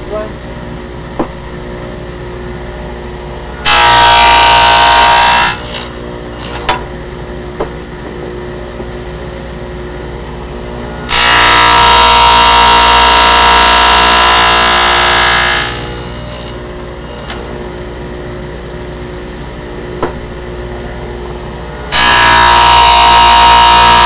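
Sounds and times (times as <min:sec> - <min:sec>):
table saw whining cut: 0:03.6 - 0:06.7, 0:11.0 - 0:17.5, 0:21.9 - 0:24.0.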